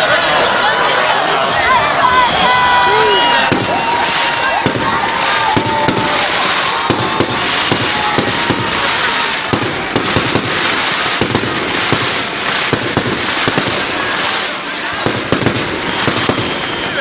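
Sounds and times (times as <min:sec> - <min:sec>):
fireworks crackling: 0:00.0 - 0:17.0
firecracker bangs: 0:03.3 - 0:17.0
faint firework whistle: 0:13.4 - 0:17.0.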